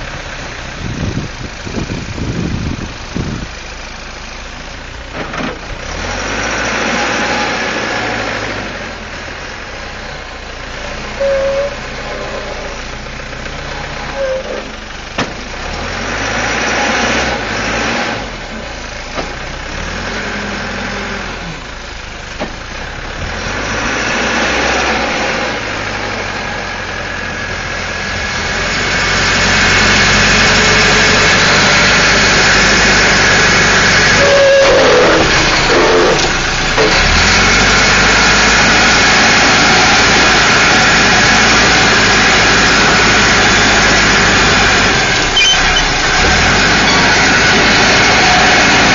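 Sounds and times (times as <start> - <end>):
diesel engine revving: 0.0 - 48.9
short squeaks: 11.2 - 12.8, 13.9 - 14.8, 34.1 - 37.0, 45.2 - 46.0, 46.8 - 47.2.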